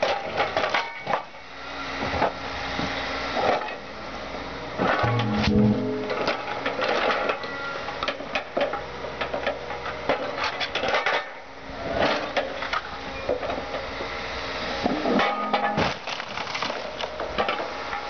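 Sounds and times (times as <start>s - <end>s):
metal and glass crunching: 15.2s - 17.1s.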